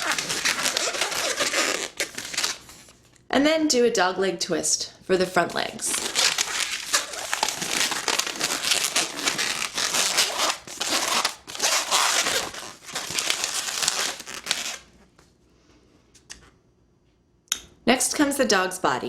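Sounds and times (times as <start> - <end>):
balloon squeaking and rubbing: 0.0 - 2.9, 5.7 - 14.9.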